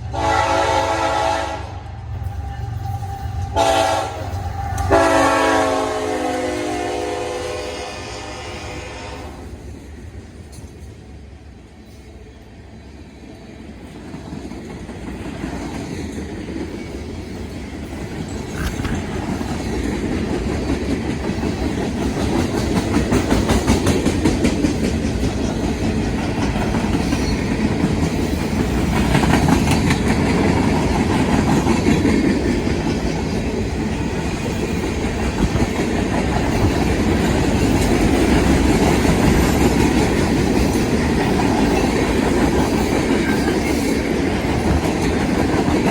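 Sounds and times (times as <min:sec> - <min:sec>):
freight train rumbling: 0:00.0 - 0:45.9
wheels clacking over rail joints: 0:13.8 - 0:45.9.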